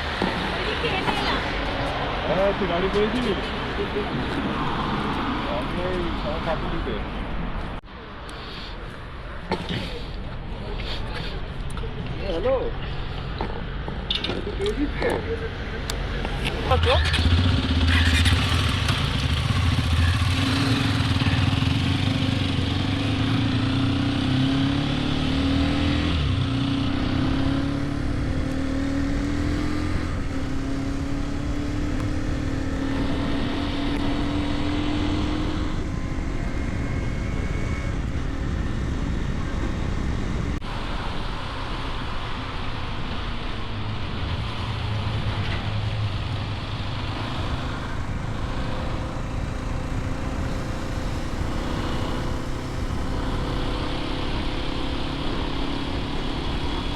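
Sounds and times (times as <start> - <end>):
wind and road noise: 0.0 - 56.9
motorcycle engine accelerating: 14.1 - 40.7, 43.8 - 56.9.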